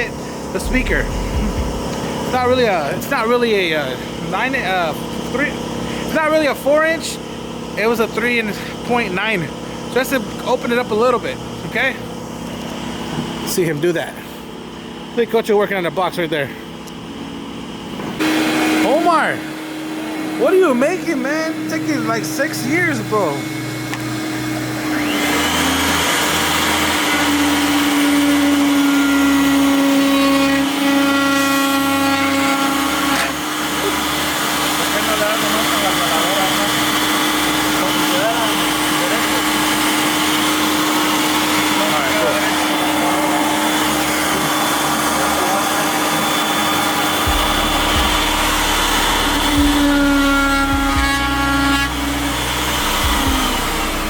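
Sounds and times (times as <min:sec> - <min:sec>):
high-pitched whine: 0:00.0 - 0:04.0, 0:46.8 - 0:54.0
power tool motor whining: 0:23.0 - 0:54.0.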